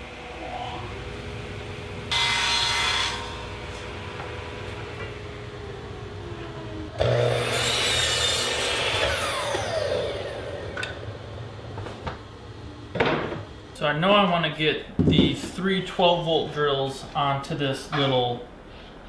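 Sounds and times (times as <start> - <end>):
power saw cutting plywood: 7.0 - 11.1.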